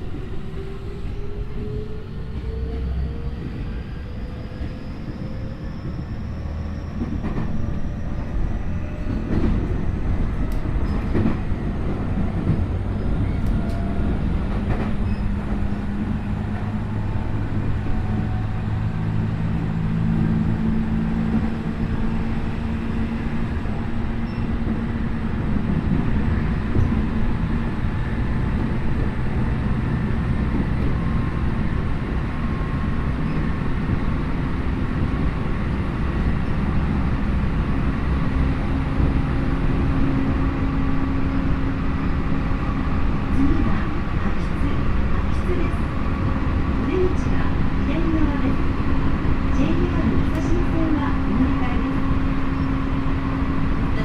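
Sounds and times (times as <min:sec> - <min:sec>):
train wheel and track rumble: 0:00.0 - 0:54.0
rail-joint clicks: 0:09.0 - 0:16.7, 0:49.7 - 0:52.8.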